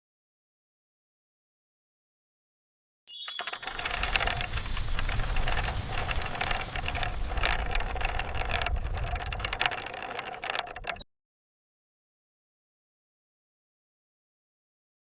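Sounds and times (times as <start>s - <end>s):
mechanical rattling and clicking: 3.4s - 11.0s.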